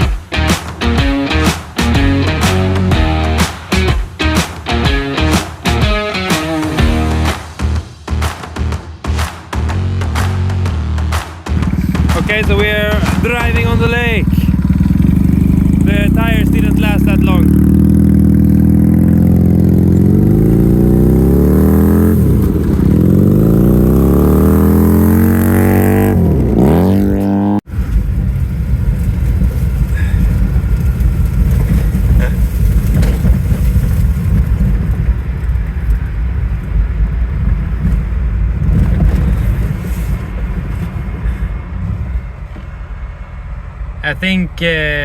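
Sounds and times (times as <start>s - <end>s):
lawn mower engine revving: 0.0s - 7.5s, 11.5s - 27.6s
rough low rumble: 6.8s - 45.0s.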